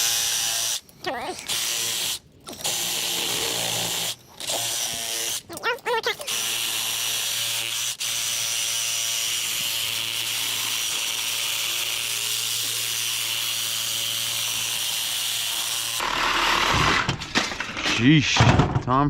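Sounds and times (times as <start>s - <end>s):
reciprocating saw cutting steel: 9.2s - 16.6s.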